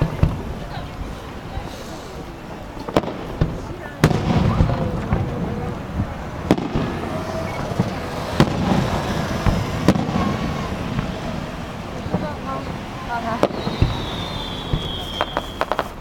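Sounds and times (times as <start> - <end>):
small firework pops: 0.0 - 0.9, 2.7 - 11.2, 13.3 - 16.0
fireworks bursting: 0.0 - 16.0.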